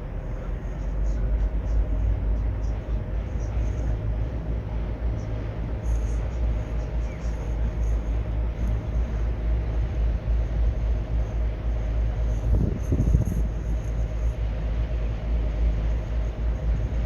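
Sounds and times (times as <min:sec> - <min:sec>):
ferry engine running: 0:00.0 - 0:17.0
wind buffeting microphone: 0:09.8 - 0:17.0.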